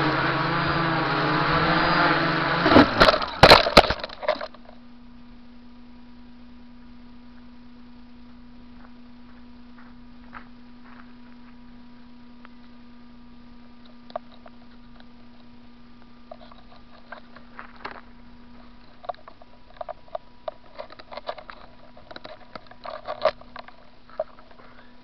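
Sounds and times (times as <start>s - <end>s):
electrical hum: 0.0s - 25.0s
faint clicks and crackles: 13.8s - 24.8s.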